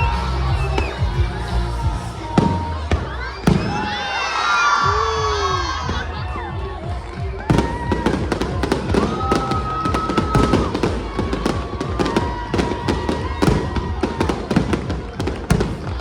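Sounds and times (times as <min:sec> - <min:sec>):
fireworks bangs and crackles: 0:00.0 - 0:04.2, 0:05.2 - 0:16.0.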